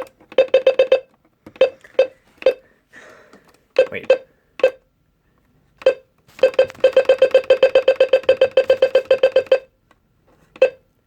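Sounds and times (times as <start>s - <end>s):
electronic beeps: 5.8s - 9.7s.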